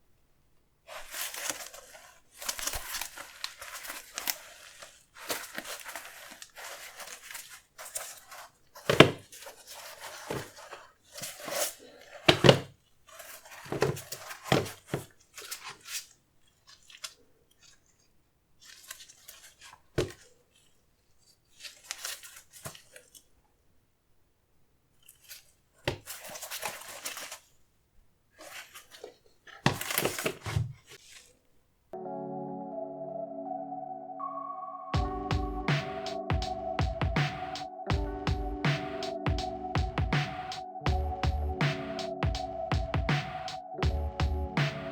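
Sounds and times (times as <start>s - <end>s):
packaging paper rustling: 0.9s - 18.0s, 18.6s - 20.7s, 21.5s - 23.2s, 25.1s - 27.6s, 28.4s - 31.5s.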